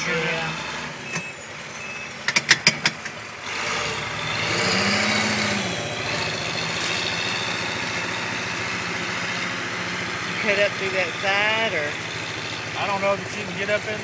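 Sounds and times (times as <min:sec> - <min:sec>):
vehicle engine running: 0:00.0 - 0:14.0.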